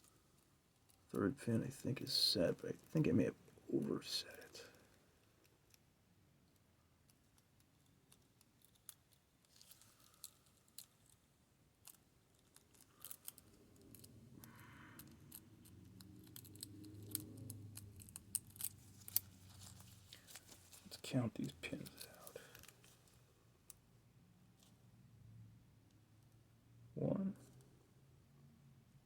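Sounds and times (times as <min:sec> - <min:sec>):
lock pick clicks and scrapes: 0:11.9 - 0:20.5.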